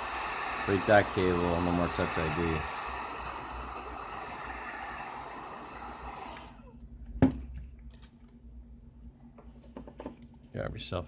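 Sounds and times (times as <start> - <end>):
heat gun blowing air: 0.0 - 6.7.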